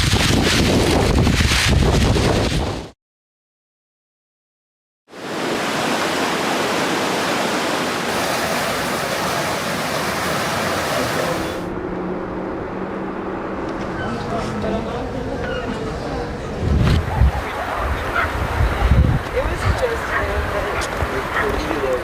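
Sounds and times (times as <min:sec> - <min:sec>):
storm water rushing: 0:05.1 - 0:11.7, 0:16.6 - 0:21.3.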